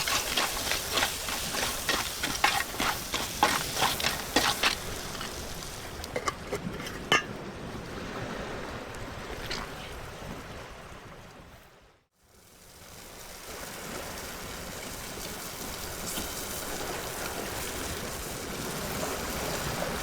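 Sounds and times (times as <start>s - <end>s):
food sizzling: 0.0s - 7.2s
utensil stirring in a pan: 0.0s - 7.3s.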